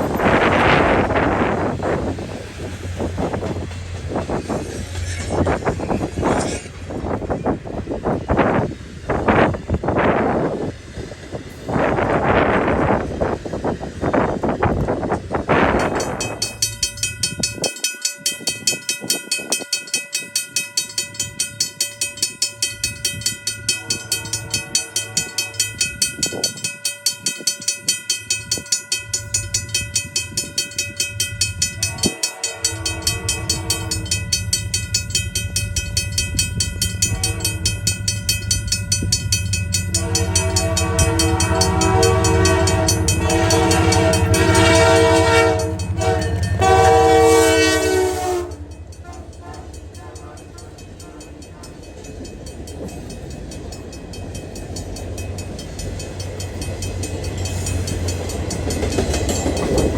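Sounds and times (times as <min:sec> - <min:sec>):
crossing bells ringing: 0:00.0 - 0:10.6, 0:14.4 - 0:59.9
train rumble: 0:00.0 - 0:59.9
train horn blasts: 0:23.6 - 0:26.0, 0:31.8 - 0:34.4, 0:37.0 - 0:38.0, 0:39.9 - 0:51.7.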